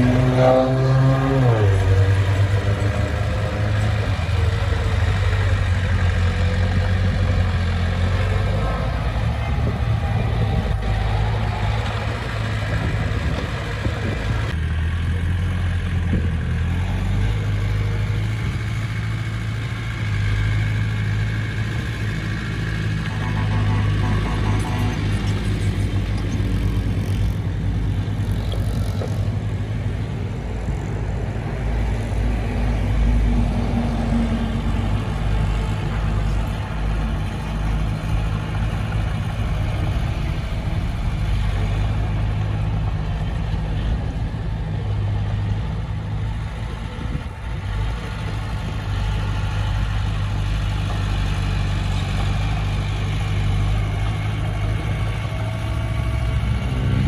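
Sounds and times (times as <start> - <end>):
heavy diesel engine humming: 0.0 - 57.0.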